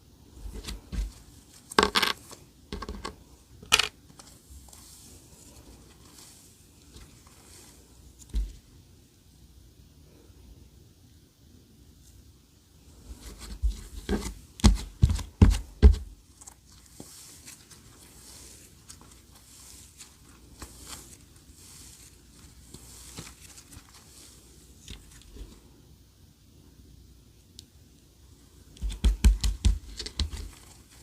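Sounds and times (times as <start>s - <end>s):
slime crackling and rustling: 0.4s - 8.8s, 13.0s - 25.7s, 28.8s - 31.0s.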